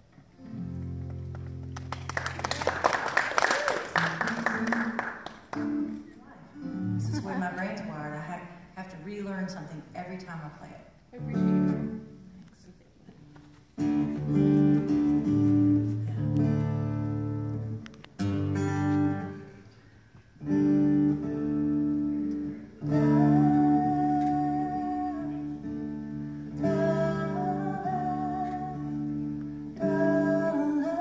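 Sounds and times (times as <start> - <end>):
acoustic guitar strumming chords: 13.8 - 31.0.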